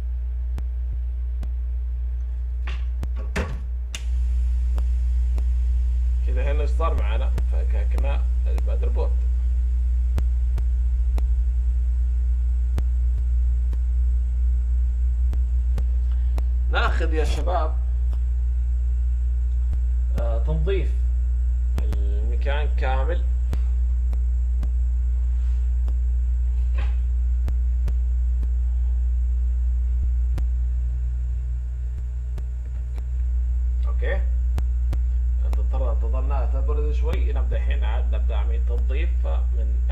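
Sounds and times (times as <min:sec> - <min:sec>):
mains hum: 0:00.0 - 0:39.9
faint clicks: 0:25.7 - 0:26.1, 0:30.0 - 0:35.7
sharp clicks: 0:31.9 - 0:33.9.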